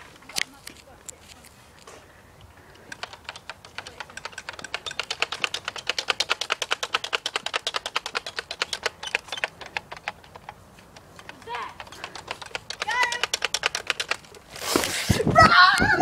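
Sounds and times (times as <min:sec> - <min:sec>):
rapid sharp clicks: 0:02.7 - 0:14.9.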